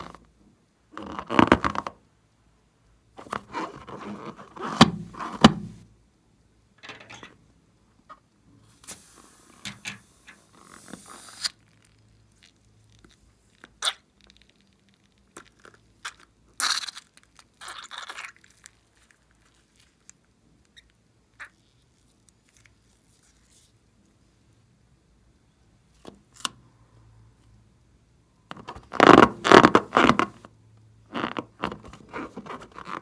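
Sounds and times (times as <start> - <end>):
slime squishing and crackling: 11.4 - 20.2.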